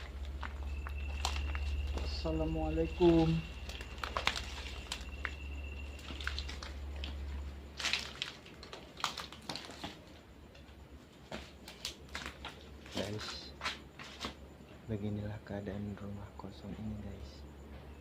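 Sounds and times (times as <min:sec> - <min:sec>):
footsteps crunching on debris: 0:00.0 - 0:10.1.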